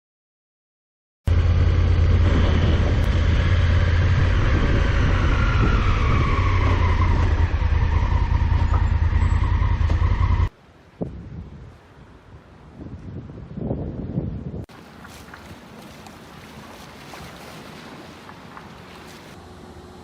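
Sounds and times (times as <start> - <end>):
engine drone with whine: 1.3 - 10.5, 18.1 - 20.0.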